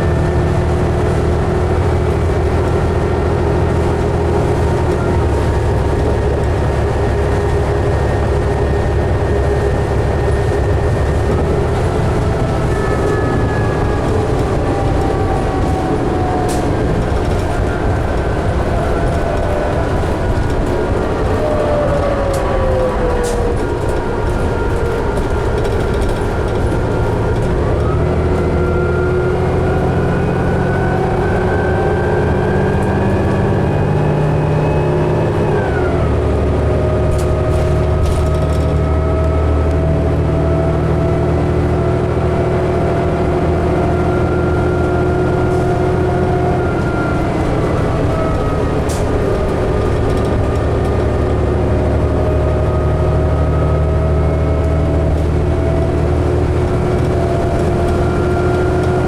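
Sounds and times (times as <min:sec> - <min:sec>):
bus engine whine: 0:00.0 - 0:59.0.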